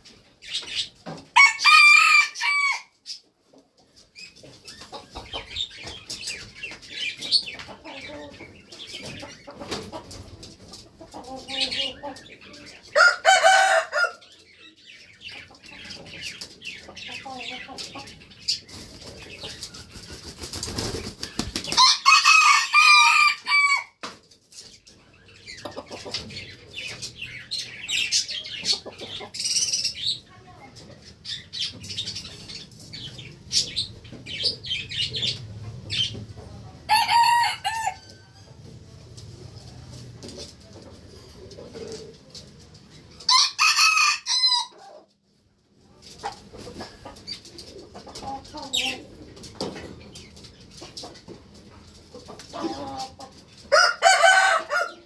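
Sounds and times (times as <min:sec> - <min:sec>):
chickens clucking: 0:00.0 - 0:55.0
rooster crowing: 0:01.4 - 0:02.9, 0:13.0 - 0:14.2, 0:21.8 - 0:24.0, 0:36.9 - 0:38.1, 0:43.3 - 0:44.7, 0:53.7 - 0:55.0.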